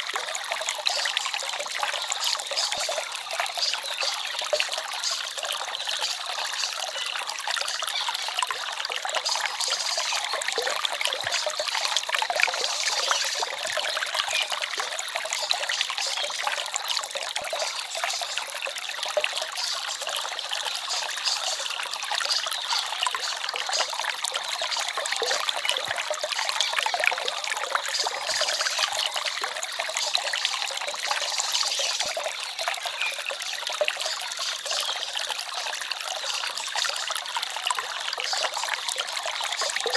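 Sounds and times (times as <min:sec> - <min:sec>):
stream babbling over stones: 0:00.0 - 0:39.9.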